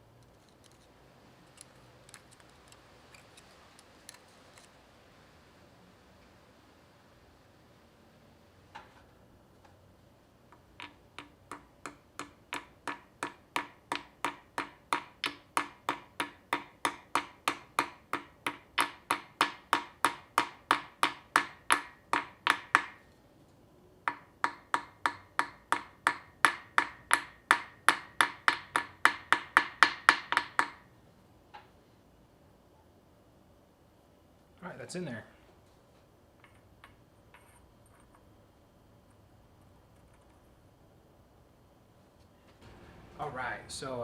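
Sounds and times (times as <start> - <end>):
hammer tapping on metal: 10.5 - 23.0, 24.1 - 30.9.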